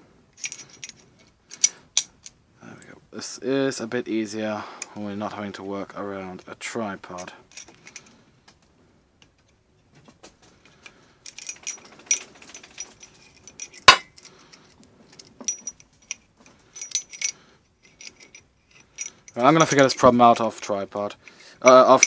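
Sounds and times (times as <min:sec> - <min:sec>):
small steel parts clicking: 0:00.4 - 0:02.4, 0:10.6 - 0:22.0.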